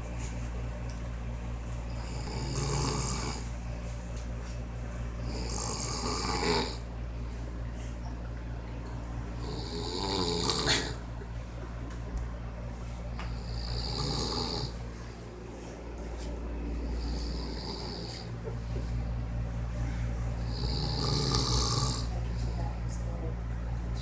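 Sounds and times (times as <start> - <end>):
steady low hum: 0.0 - 24.0
man snoring: 2.0 - 3.5, 5.2 - 6.9, 9.4 - 11.0, 13.4 - 14.8, 16.8 - 18.4, 20.4 - 22.1.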